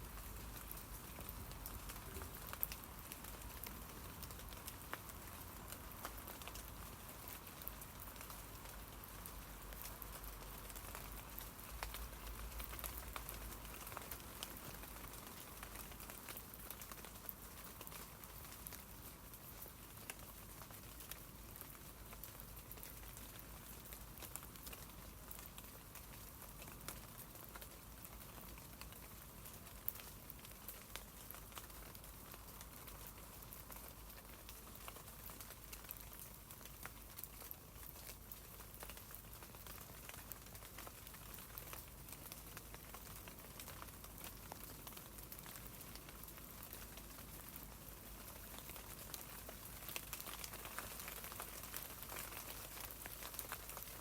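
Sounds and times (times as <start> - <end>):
rain on tree leaves: 0.0 - 54.0.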